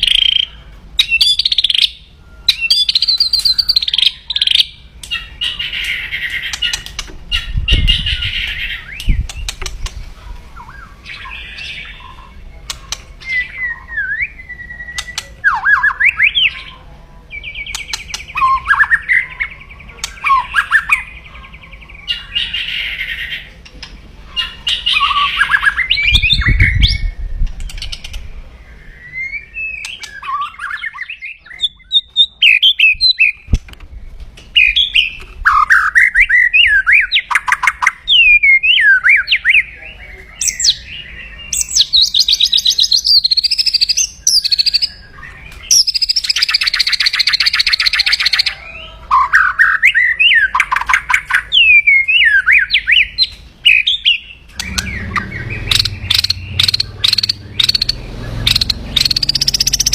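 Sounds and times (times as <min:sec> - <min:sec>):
bird singing whistles: 0:00.0 - 0:05.3, 0:13.2 - 0:16.6, 0:28.7 - 0:33.4, 0:40.4 - 0:51.0, 0:51.6 - 0:59.9.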